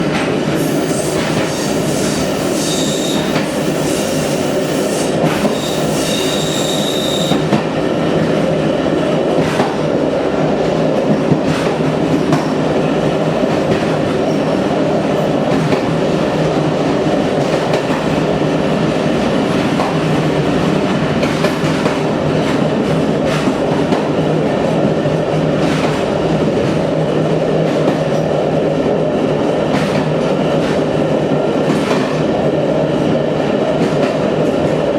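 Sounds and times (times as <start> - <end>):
train rumbling: 0.0 - 34.9
high-pitched wheel squeal: 0.6 - 7.5.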